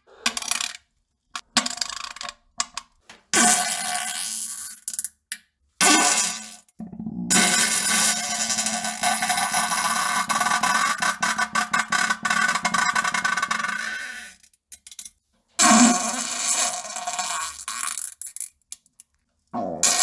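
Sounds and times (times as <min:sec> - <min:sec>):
crackling fart: 0:06.8 - 0:08.1, 0:19.6 - 0:20.0.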